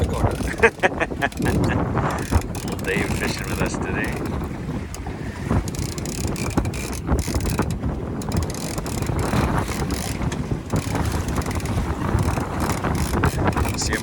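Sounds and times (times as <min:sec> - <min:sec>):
boat motor noise: 0:00.0 - 0:14.0
water: 0:00.0 - 0:14.0
wind buffeting microphone: 0:00.0 - 0:14.0
mechanical clicking: 0:05.6 - 0:14.0.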